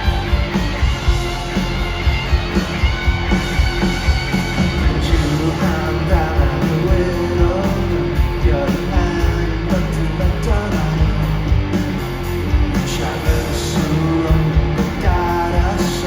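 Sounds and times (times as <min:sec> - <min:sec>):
electric guitar: 0:00.0 - 0:16.0
steady drum beat: 0:00.0 - 0:16.0
person singing: 0:04.8 - 0:11.4, 0:12.8 - 0:16.0.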